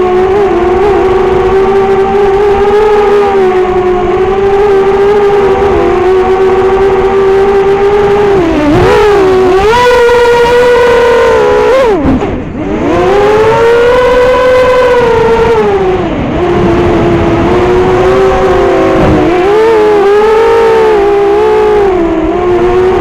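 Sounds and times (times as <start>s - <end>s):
quadcopter motors whining: 0.0s - 23.0s.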